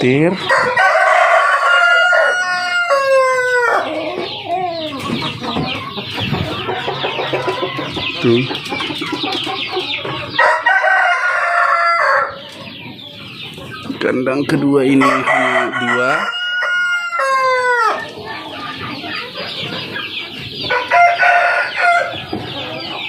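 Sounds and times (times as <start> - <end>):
chickens clucking: 0.0 - 23.0
rooster crowing: 0.5 - 4.3, 10.4 - 12.4, 15.0 - 18.1, 20.7 - 22.3.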